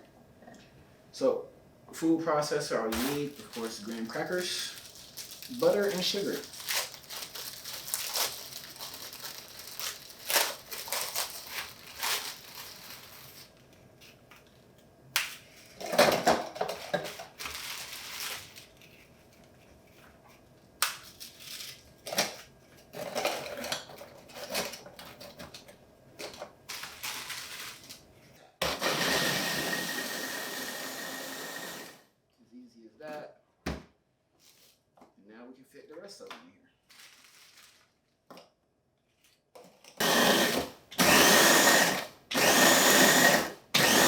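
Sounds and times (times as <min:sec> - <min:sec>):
crackers crunching and clattering: 0:02.9 - 0:15.8, 0:20.8 - 0:28.1, 0:36.9 - 0:38.2
food processor grinding: 0:28.6 - 0:32.0, 0:40.0 - 0:44.0.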